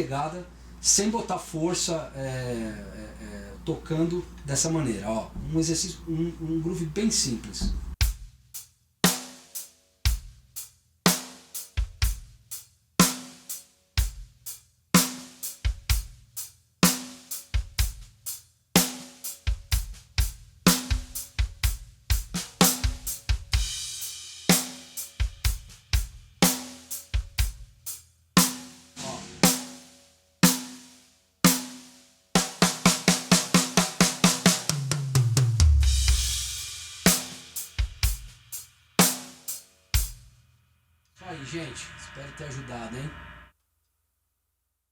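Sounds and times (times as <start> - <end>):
drum kit groove: 3.8 - 40.4.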